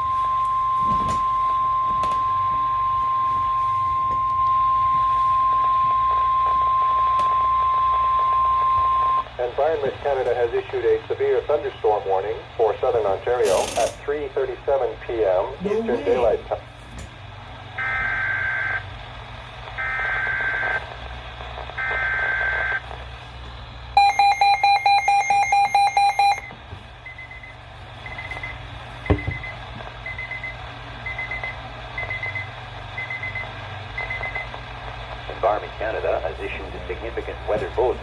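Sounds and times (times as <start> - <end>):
short high beeps: 24.0 - 26.5
person speaking over radio: 35.2 - 38.0.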